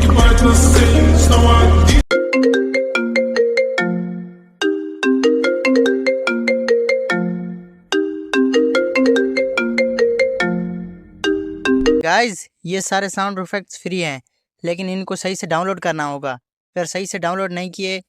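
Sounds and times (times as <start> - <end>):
phone ringtone melody: 2.1 - 12.0.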